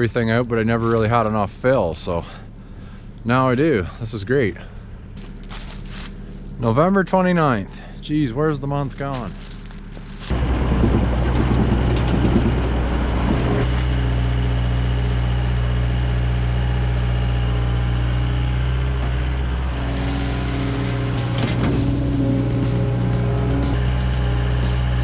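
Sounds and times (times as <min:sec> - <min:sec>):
excavator diesel engine running: 0:09.0 - 0:25.0
higher tone: 0:19.2 - 0:25.0.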